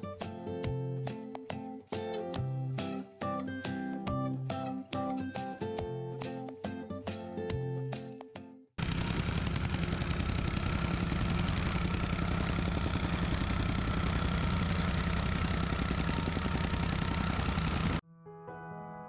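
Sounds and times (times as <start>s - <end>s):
engine running steadily: 8.8s - 18.0s.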